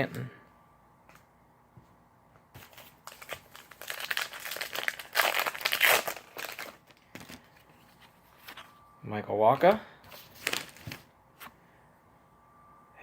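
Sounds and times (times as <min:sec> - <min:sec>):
plastic wrapper tearing and crinkling: 0:02.6 - 0:07.0, 0:10.3 - 0:11.0.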